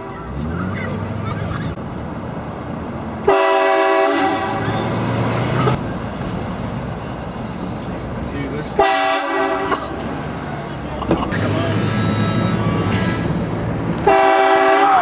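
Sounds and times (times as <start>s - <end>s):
street and vehicle noise: 0.0s - 15.0s
train horn blasting: 3.3s - 4.8s, 8.8s - 9.7s, 14.0s - 15.0s.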